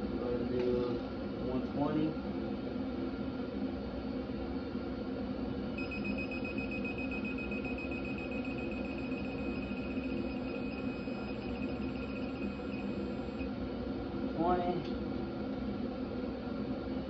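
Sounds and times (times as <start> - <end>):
low background hum: 0.0 - 17.0
high electronic beep: 5.8 - 13.5.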